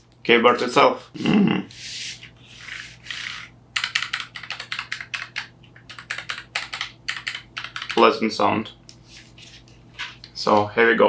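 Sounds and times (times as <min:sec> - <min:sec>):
mechanical keyboard typing: 0:03.8 - 0:08.1
soft rubbing and sliding: 0:09.0 - 0:10.6.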